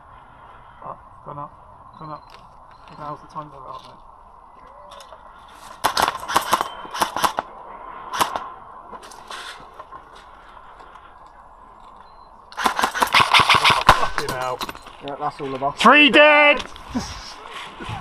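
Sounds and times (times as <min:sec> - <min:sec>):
airsoft guns firing: 0:05.8 - 0:07.5, 0:08.1 - 0:08.4, 0:12.6 - 0:14.3.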